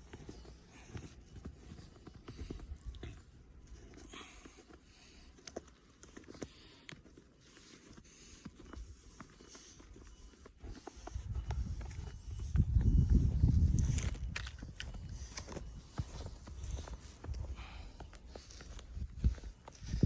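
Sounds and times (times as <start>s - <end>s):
footsteps crunching through snow: 7.5s - 20.0s.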